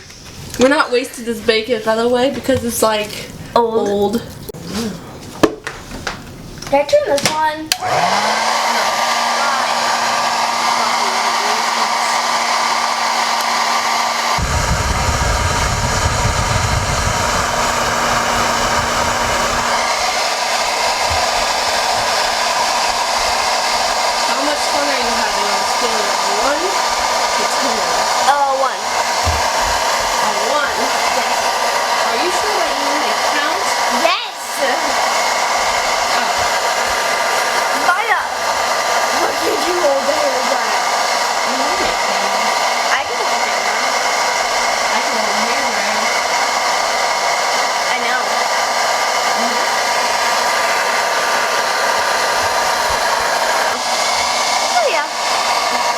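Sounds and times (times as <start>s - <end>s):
hair dryer running: 0.0s - 3.3s, 4.7s - 55.9s.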